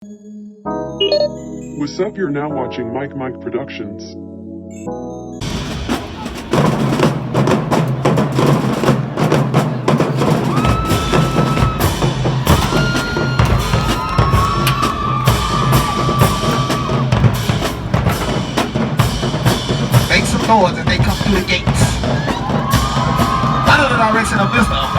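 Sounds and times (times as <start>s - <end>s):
deeper drums: 5.4s - 24.9s
snare and bass drums cadence: 5.4s - 24.9s.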